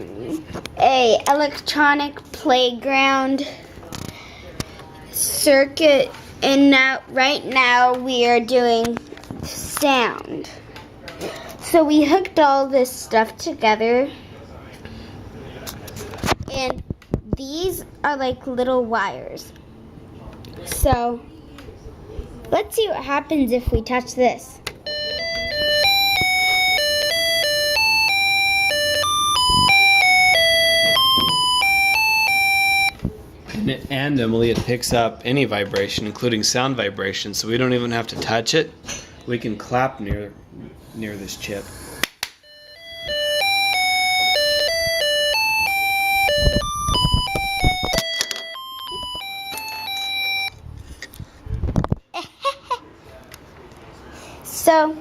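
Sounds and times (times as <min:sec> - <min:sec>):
electronic beeping tune: 0:24.9 - 0:33.0, 0:42.4 - 0:50.5.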